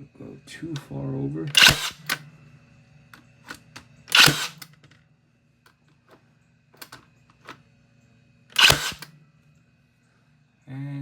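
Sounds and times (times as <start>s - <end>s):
nail gun shot: 1.5s - 2.2s, 4.1s - 4.7s, 8.6s - 9.1s
tool clicks and taps: 1.5s - 2.2s, 8.6s - 9.1s.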